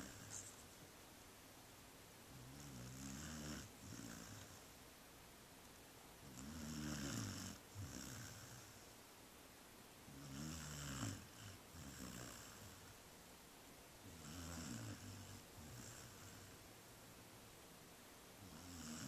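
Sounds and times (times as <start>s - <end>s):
pet snoring: 0.0s - 0.5s, 2.3s - 4.6s, 6.2s - 8.9s, 10.1s - 13.0s, 14.0s - 16.6s, 18.4s - 19.0s.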